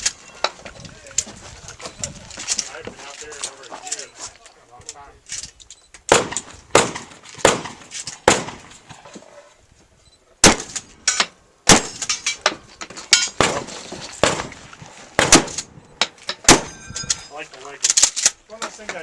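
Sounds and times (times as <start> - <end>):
shotgun shots: 6.1 - 8.8, 10.4 - 11.0, 11.6 - 12.2, 13.4 - 14.6, 15.2 - 15.8, 16.4 - 16.8.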